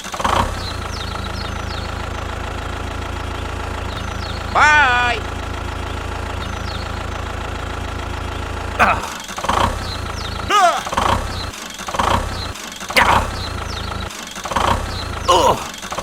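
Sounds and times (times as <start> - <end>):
model tractor engine chugging: 0.0 - 16.0
high voice-like squeals: 10.5 - 11.0.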